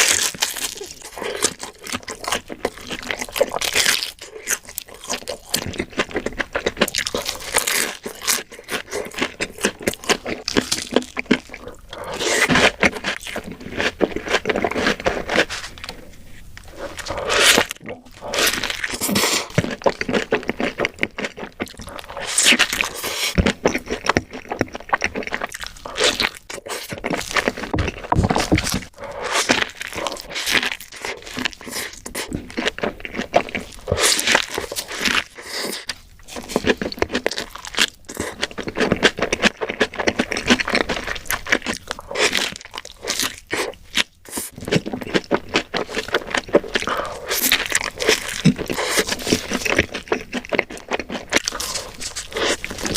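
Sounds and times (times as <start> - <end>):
person chewing crunchy food: 0.0 - 52.9.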